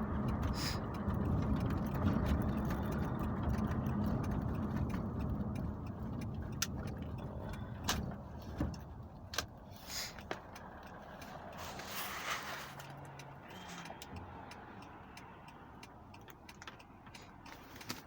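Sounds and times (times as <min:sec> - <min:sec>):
car road and engine rumble: 0:00.0 - 0:18.0
sharp clicks: 0:00.1 - 0:11.6.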